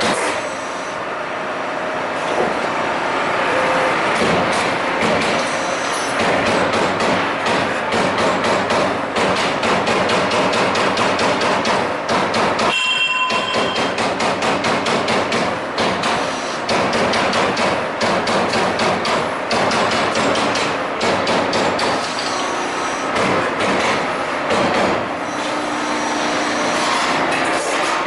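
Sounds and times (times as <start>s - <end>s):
punch press punching sheet metal: 4.2s - 22.4s, 23.1s - 25.1s.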